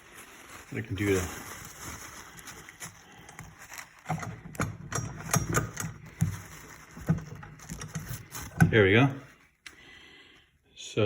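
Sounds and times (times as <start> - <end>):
metal parts clicking and knocking: 3.3 - 8.8.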